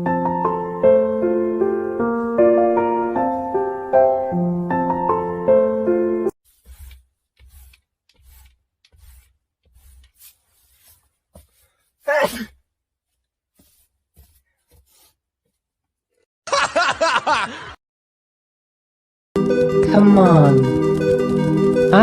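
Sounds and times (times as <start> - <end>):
soft rustling: 6.4 - 12.1, 13.0 - 15.7
person sneezing: 12.0 - 12.6.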